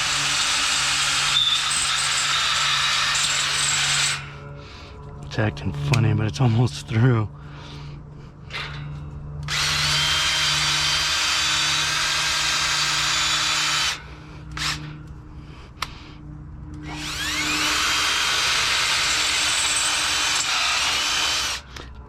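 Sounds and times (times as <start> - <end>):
electric drill boring through steel: 0.0 - 4.4, 9.4 - 14.9, 16.7 - 21.7.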